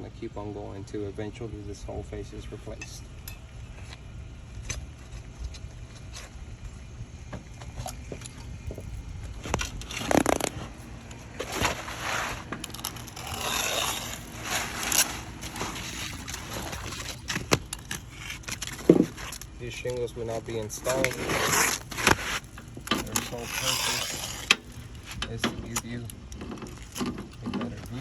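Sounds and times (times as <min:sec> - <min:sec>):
steady low rumble: 0:00.0 - 0:28.0
shingles crunching and scraping: 0:07.7 - 0:28.0.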